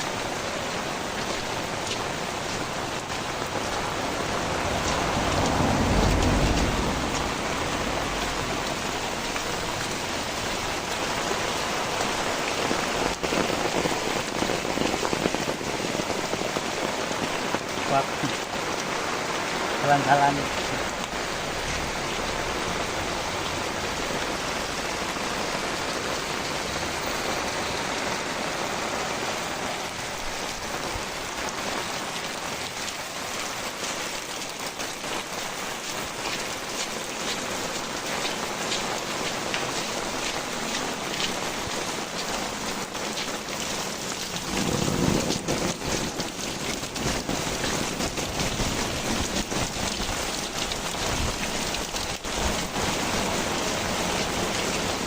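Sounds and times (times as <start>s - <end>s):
heavy rain pouring: 0.0s - 55.0s
raindrops ticking on surfaces: 0.0s - 55.0s
low rumble: 3.6s - 9.2s.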